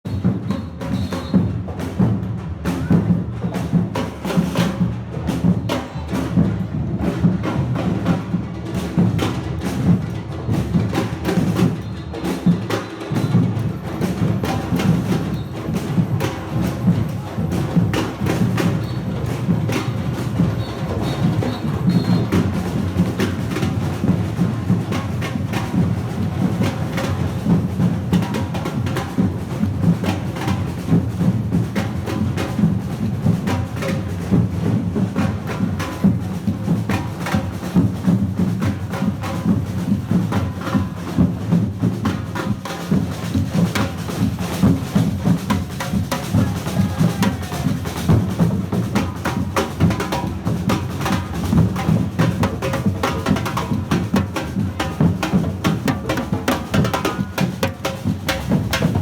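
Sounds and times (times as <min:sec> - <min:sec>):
low drums beating: 0:00.1 - 0:59.0.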